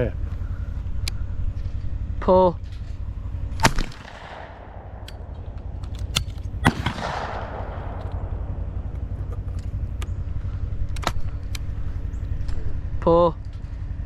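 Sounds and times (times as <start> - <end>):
shotgun shots with echo: 3.5 - 9.1.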